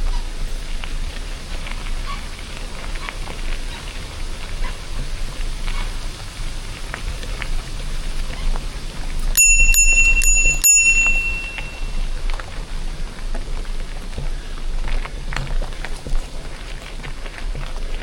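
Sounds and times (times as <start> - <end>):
bicycle bell dinging: 9.4 - 12.1
bike tyres on gravel: 13.1 - 18.0.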